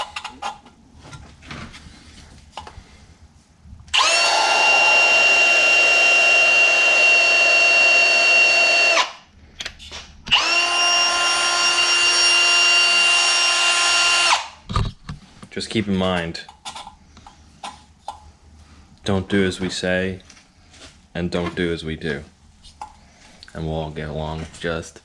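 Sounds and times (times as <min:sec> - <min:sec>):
power drill spinning: 0:03.9 - 0:09.2, 0:10.3 - 0:14.6.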